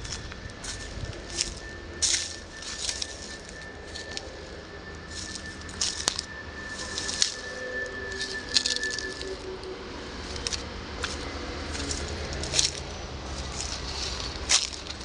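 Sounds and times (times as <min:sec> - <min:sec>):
diesel engine idling: 0:09.6 - 0:15.0.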